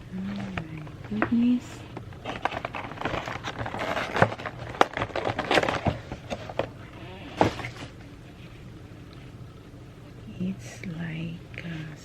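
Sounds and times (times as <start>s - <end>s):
packaging rustling and crinkling: 0.3s - 8.6s.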